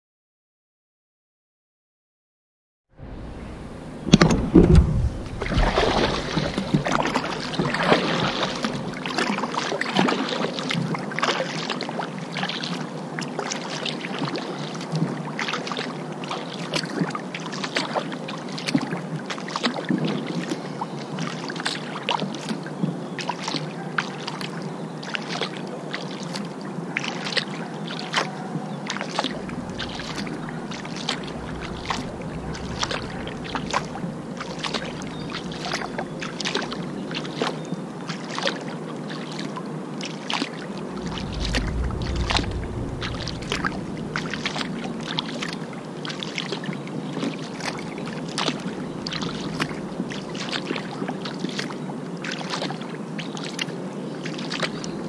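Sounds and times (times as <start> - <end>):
low thump: 3.0 - 7.2, 29.3 - 36.3, 41.0 - 45.2
water wash: 3.0 - 9.4, 29.1 - 37.5, 40.8 - 51.6
paddle splashing in water: 4.0 - 10.5.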